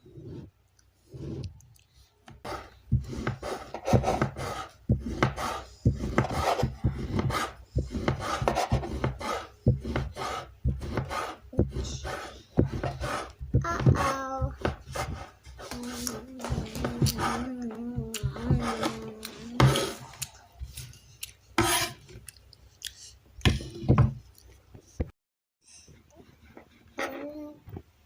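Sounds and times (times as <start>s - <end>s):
dough rubbed on wooden board: 2.4s - 17.6s.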